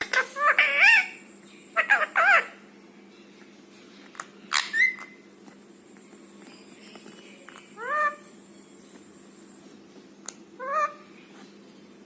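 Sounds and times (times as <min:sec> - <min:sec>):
parakeet calling: 0:00.0 - 0:02.7, 0:04.1 - 0:05.3, 0:07.3 - 0:08.4, 0:10.6 - 0:11.3.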